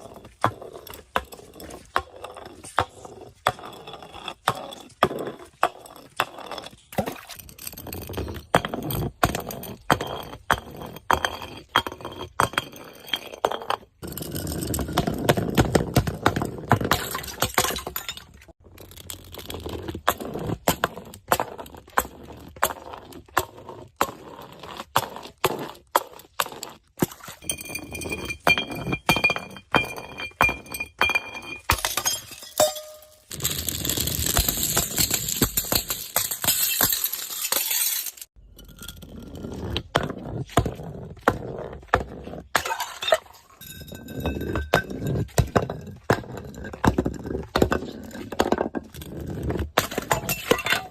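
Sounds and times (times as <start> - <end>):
glass smashing: 31.0 - 38.3
glass crunching: 31.6 - 38.3.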